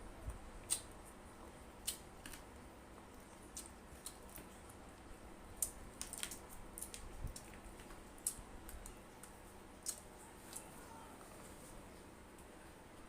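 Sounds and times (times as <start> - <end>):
chewing crispy fried chicken: 1.8 - 11.2.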